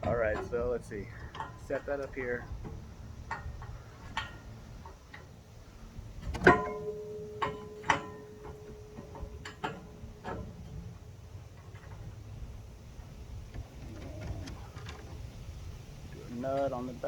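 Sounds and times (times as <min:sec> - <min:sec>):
metal hardware clinking and knocking: 0:00.0 - 0:12.7.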